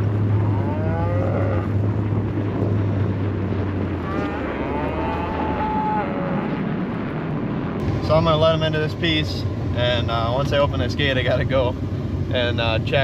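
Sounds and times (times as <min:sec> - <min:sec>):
cattle mooing: 0:00.0 - 0:01.9, 0:04.0 - 0:06.7
engine idling hum: 0:00.0 - 0:13.0.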